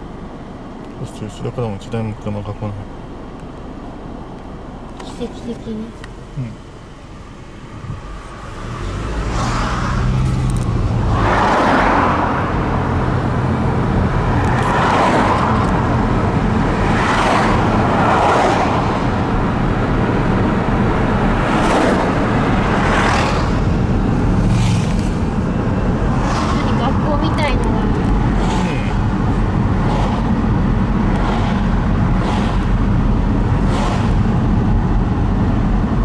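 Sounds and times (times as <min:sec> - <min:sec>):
car engine and road noise: 0:00.0 - 0:36.0
rushing noise: 0:08.4 - 0:36.0.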